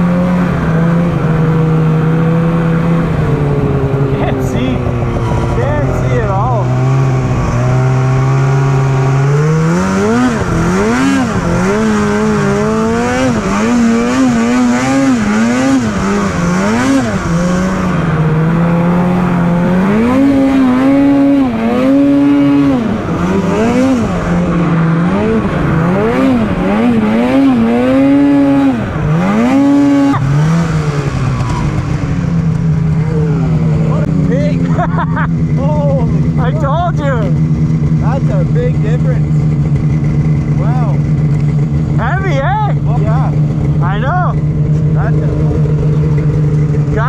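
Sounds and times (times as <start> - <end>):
snowmobile engine revving: 0.0 - 47.0.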